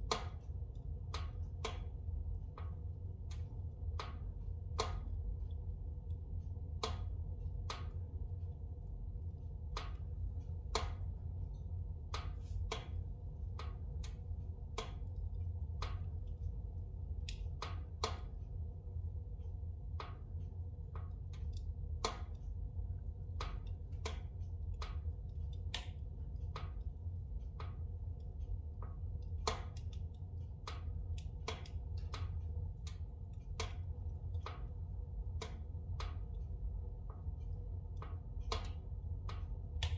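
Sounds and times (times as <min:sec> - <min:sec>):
steady low rumble: 0:00.0 - 0:39.9
logs crackling and popping in fire: 0:17.2 - 0:18.3, 0:28.9 - 0:34.8, 0:38.0 - 0:39.9.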